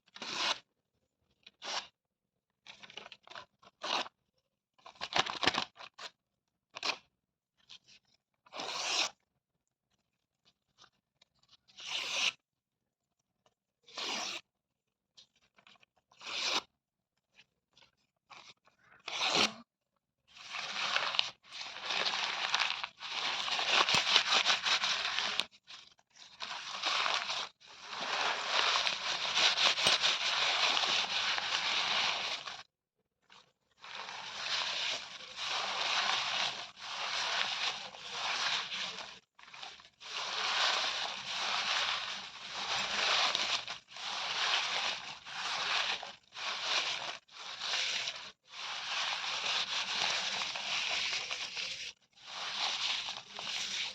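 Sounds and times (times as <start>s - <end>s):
paper tearing: 20.6s - 25.5s, 26.4s - 32.6s.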